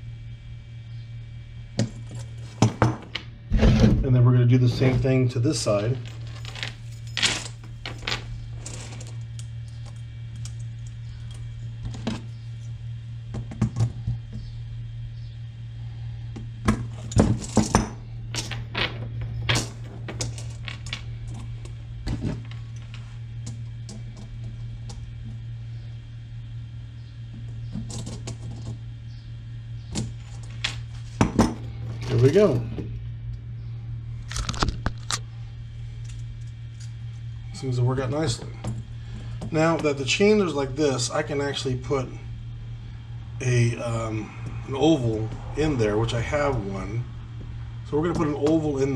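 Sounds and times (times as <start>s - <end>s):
low hum: 0.0s - 48.9s
metal chain clinking: 6.0s - 8.9s.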